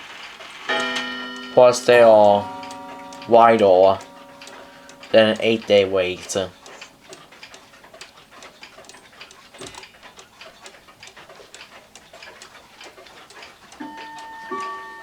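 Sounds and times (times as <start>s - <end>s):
clock ticking quickly: 0.6s - 15.0s
musical tones: 0.7s - 7.1s, 13.8s - 15.0s.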